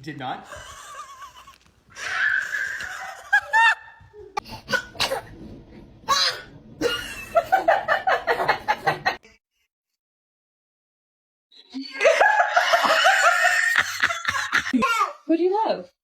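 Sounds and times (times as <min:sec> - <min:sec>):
baby laughing: 0:02.6 - 0:05.3, 0:11.9 - 0:15.3.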